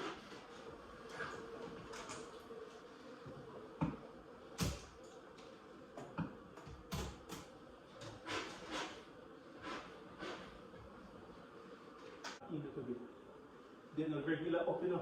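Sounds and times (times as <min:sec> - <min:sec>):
faint steady hum: 0:00.0 - 0:15.0
knocks and clicks of boards and tools: 0:04.6 - 0:09.0.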